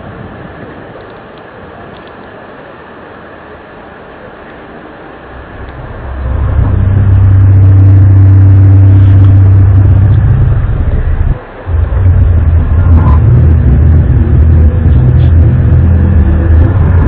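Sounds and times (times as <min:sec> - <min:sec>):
loud low drone: 0:05.0 - 0:17.0.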